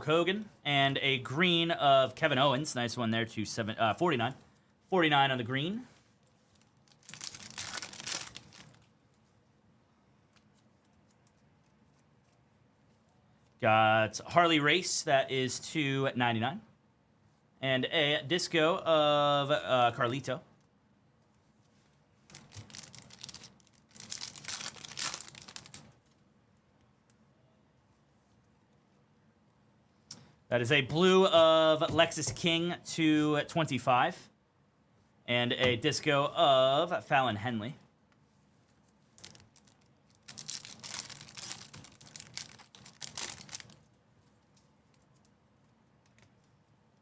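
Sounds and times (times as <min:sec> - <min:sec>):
foil wrapper crinkling: 0:06.3 - 0:09.2, 0:22.2 - 0:26.2, 0:39.1 - 0:44.0.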